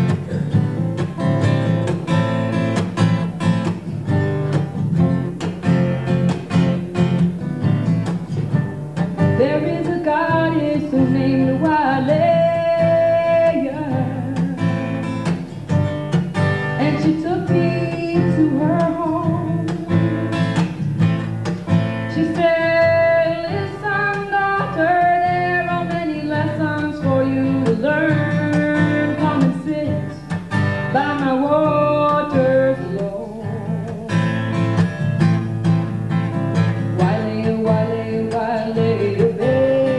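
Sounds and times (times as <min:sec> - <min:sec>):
strummed acoustic guitar: 0:00.0 - 0:39.9
woman singing: 0:09.2 - 0:15.1, 0:16.6 - 0:20.7, 0:22.0 - 0:34.6, 0:36.8 - 0:39.9.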